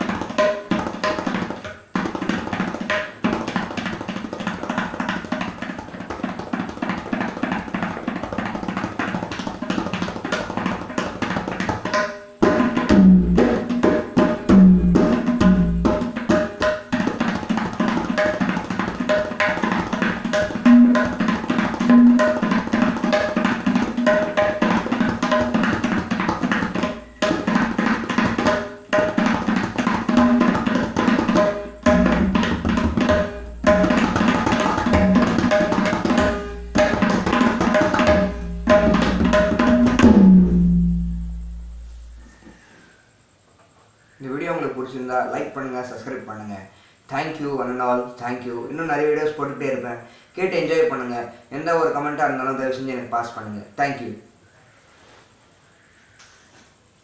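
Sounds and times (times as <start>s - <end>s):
tabla drumming: 0.0s - 42.5s.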